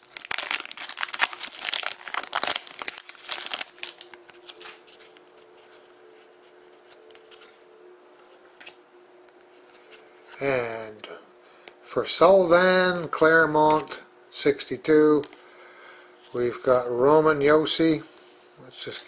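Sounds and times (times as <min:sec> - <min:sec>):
card pack wrapper tearing: 0:00.0 - 0:04.8
faint steady hum: 0:00.0 - 0:19.0.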